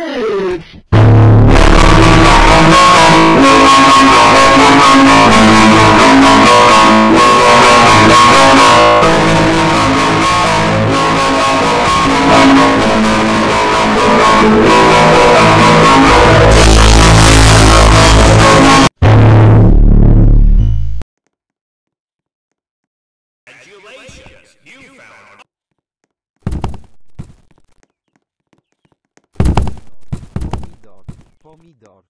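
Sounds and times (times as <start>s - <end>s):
loud guitar rock music: 1.0s - 18.9s.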